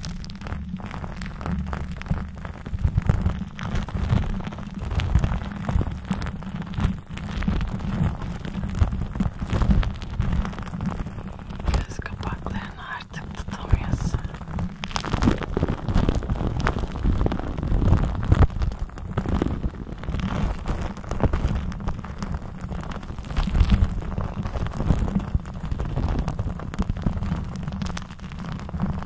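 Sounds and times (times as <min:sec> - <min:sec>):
heavy low rumble: 0:10.5 - 0:16.2
lipstick scratching on microphone: 0:11.4 - 0:14.4.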